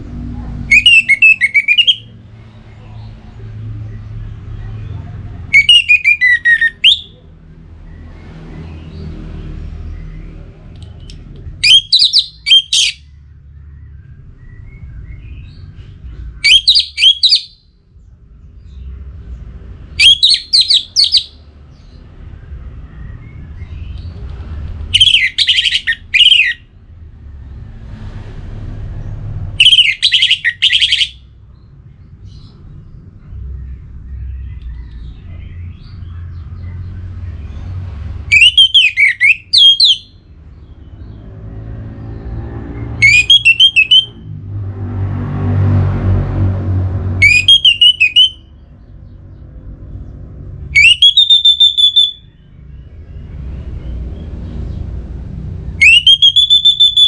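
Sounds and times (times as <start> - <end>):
thrush singing whistled notes: 0.7 - 2.3, 5.5 - 7.2, 11.6 - 13.2, 16.3 - 17.7, 19.9 - 21.8, 24.9 - 26.8, 29.6 - 31.4, 38.2 - 41.3, 42.0 - 44.3, 47.2 - 48.7, 50.6 - 53.1, 55.7 - 57.0.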